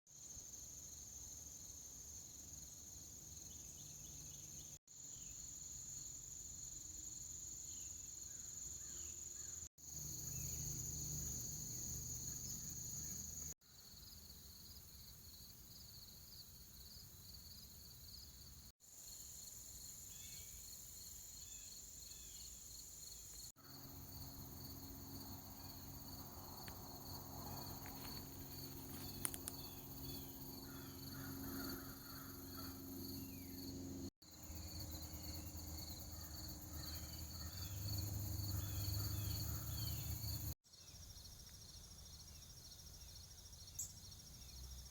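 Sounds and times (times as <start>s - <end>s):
insect pulsing chirp: 2.6s - 14.8s, 15.4s - 44.9s
crickets trilling: 5.0s - 44.9s
faint clicks: 27.8s - 29.9s.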